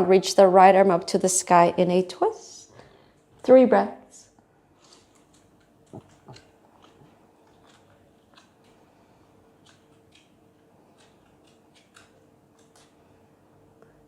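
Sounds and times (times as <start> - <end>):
faint breathing: 2.7 - 3.3.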